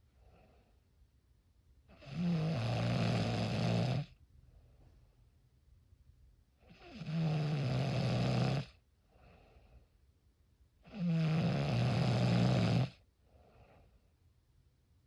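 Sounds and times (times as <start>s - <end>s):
faint breath: 0.0s - 1.0s, 4.4s - 5.3s, 9.0s - 10.1s, 13.2s - 14.2s
person snoring: 2.0s - 4.1s, 6.7s - 8.7s, 10.9s - 13.0s.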